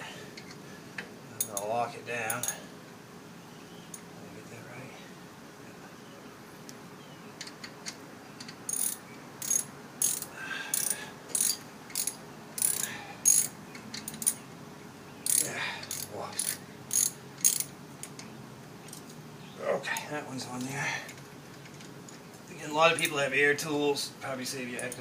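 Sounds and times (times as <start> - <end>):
hand ratchet clicking: 8.4 - 14.4, 15.2 - 18.2.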